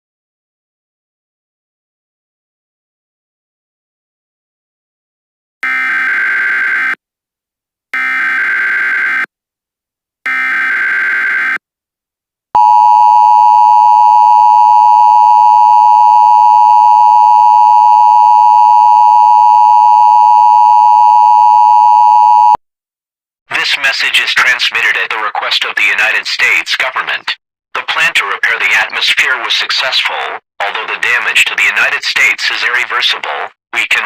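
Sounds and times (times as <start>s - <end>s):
loud steady attention tone: 12.6s - 22.6s.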